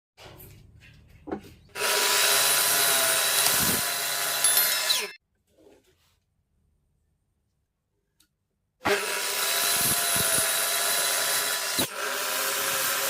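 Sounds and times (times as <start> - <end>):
power tool cutting wood: 1.8 - 5.2, 8.8 - 13.0.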